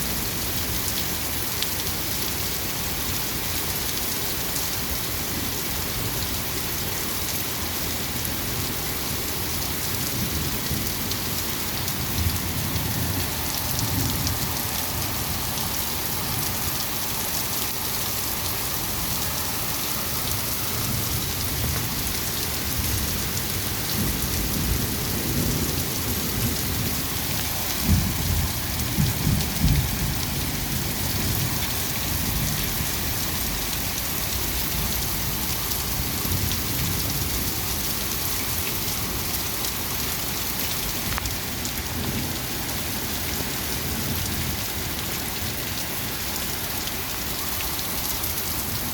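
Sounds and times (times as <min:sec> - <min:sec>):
heavy rain: 0:00.0 - 0:48.9
thunder rumbling: 0:20.8 - 0:33.6.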